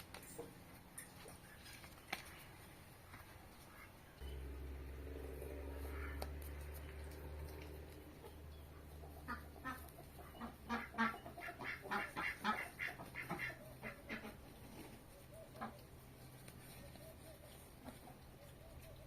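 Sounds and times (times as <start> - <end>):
low hum: 3.2 - 11.7
ducks quacking: 3.5 - 15.8.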